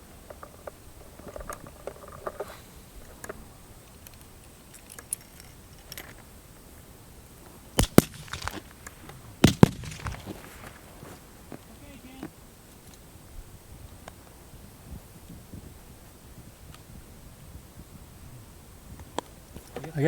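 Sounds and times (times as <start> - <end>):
light clicks and rattles: 0.2 - 6.3
loud sharp cracks: 7.8 - 11.2.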